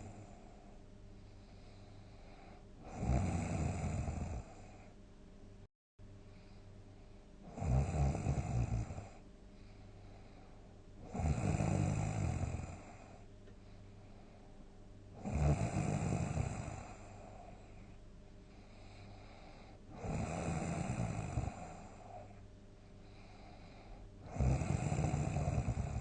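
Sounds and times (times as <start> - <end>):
quiet breathing: 0.0 - 5.1, 6.0 - 26.0
person snoring: 1.4 - 4.9, 7.5 - 9.2, 11.0 - 13.2, 15.2 - 17.8, 18.6 - 22.4, 23.1 - 26.0.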